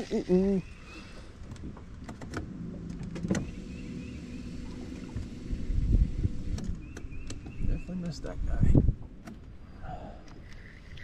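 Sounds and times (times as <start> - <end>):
wind buffeting microphone: 4.8 - 9.2
reel whirring: 10.3 - 11.0.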